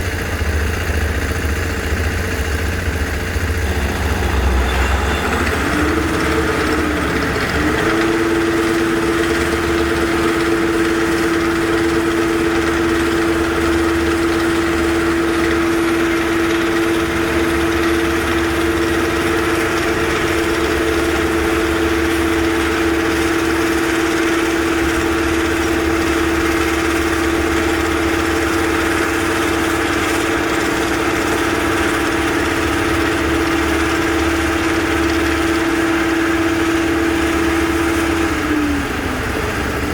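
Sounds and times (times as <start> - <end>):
construction machine engine humming: 0.0 - 39.9.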